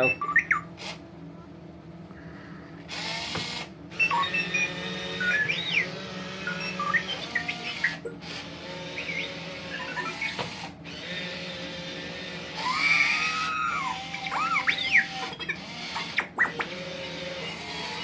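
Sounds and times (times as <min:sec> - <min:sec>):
steady low hum: 0:00.0 - 0:18.0
toy robot electronic beeps: 0:04.0 - 0:08.0, 0:09.0 - 0:10.4.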